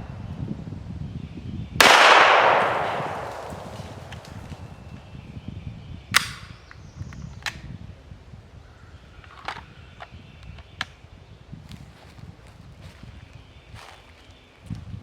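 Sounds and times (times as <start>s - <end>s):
gunshots: 1.8s - 4.9s.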